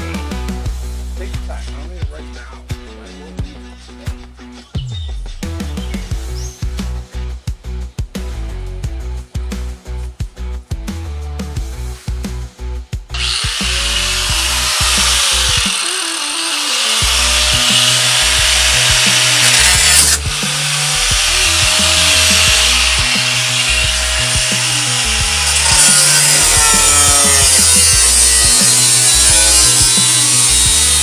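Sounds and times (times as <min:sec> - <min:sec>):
background music with heavy bass: 0:00.0 - 0:31.0
power tool cutting metal: 0:13.2 - 0:31.0.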